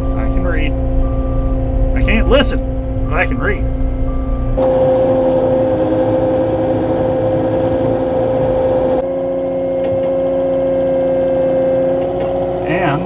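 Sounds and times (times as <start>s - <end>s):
diesel engine under load: 0.0s - 9.0s, 11.8s - 13.0s
steady hydraulic whine: 4.6s - 9.0s.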